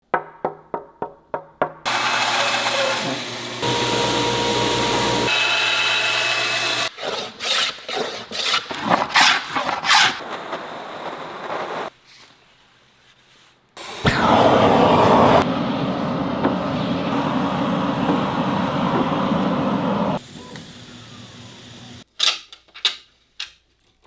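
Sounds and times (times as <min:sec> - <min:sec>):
power tool whining on wood: 0:01.9 - 0:11.9
hand tool scraping wood: 0:06.6 - 0:10.4.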